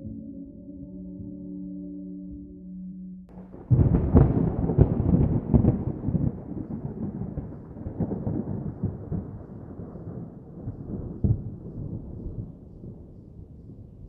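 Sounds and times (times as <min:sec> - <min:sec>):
rolling thunder rumbles: 0:03.3 - 0:14.0.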